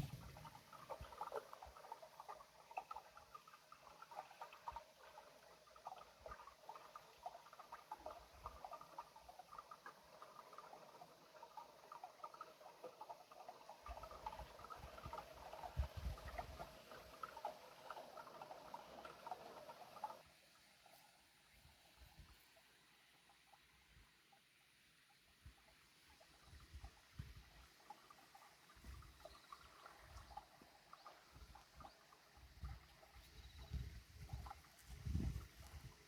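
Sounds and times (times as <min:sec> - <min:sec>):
small wet clicks and patters: 0:00.0 - 0:21.2, 0:25.5 - 0:36.0.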